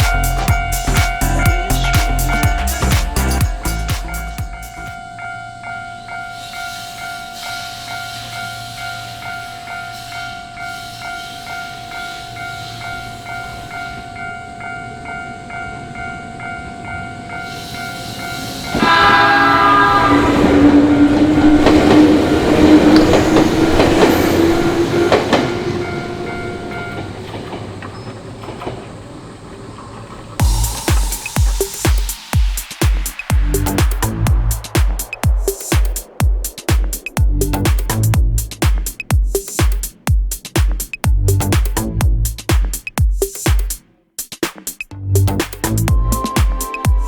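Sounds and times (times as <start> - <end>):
level crossing warning bell: 0.0 - 28.5
train horn: 17.4 - 27.3
train motor whine: 17.4 - 31.8
train wheels clattering: 17.4 - 43.7.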